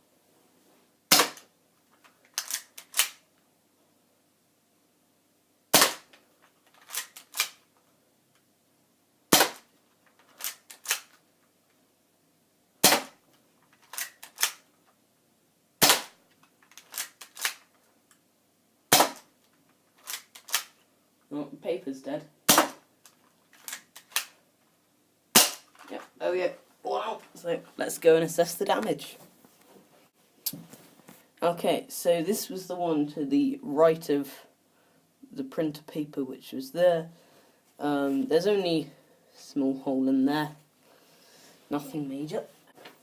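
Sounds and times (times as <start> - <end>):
bb gun shots cracking: 1.1 - 1.5, 5.7 - 6.1, 9.3 - 9.7, 12.8 - 13.2, 15.8 - 16.2, 18.9 - 19.3, 22.5 - 22.8, 25.4 - 25.7.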